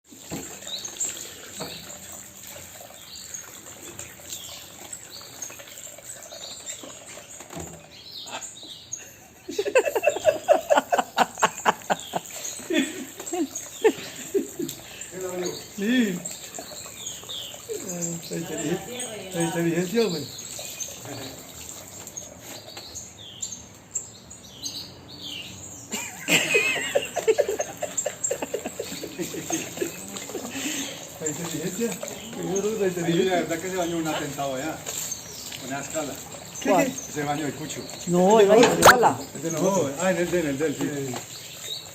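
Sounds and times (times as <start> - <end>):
birds chirping: 0.1 - 41.9
rapid wavering bird calls: 8.0 - 23.6.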